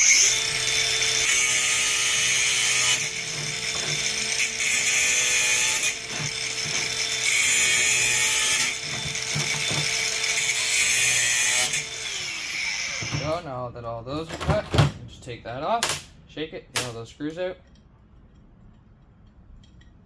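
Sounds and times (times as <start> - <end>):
angle grinder whine: 0.0 - 13.4.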